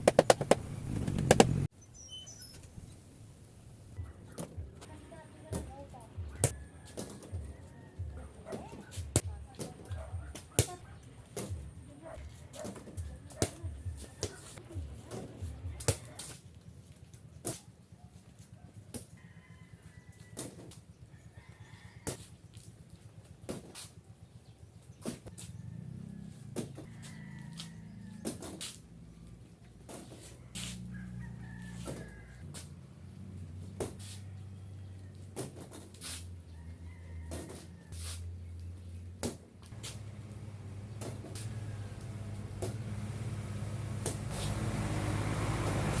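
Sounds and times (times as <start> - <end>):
sharp knocks and thumps: 0.0 - 1.7
rooster crowing faintly: 6.3 - 9.4, 25.3 - 28.9, 30.2 - 33.2, 33.9 - 38.6, 39.7 - 46.0.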